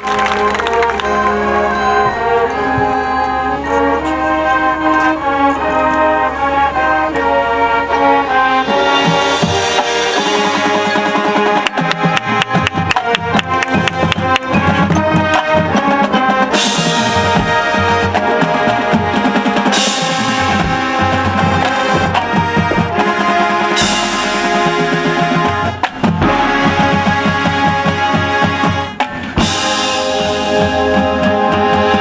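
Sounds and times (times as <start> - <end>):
wind chords: 0.0 - 32.0
drumline rapid strokes: 4.9 - 32.0
cymbal crashes: 19.8 - 31.2.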